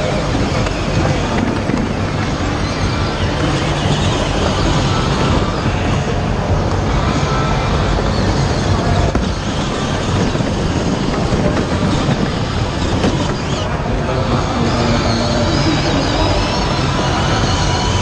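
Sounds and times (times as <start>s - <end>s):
electric toy car motors running: 0.0s - 18.0s.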